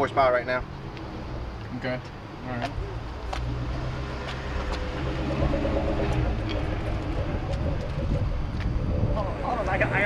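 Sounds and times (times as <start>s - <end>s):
car engine idling: 2.2s - 10.0s.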